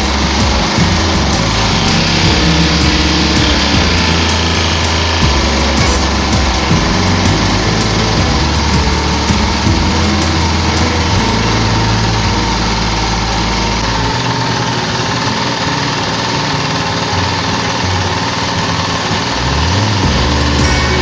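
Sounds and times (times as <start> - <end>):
lawn mower engine running: 0.0 - 21.0.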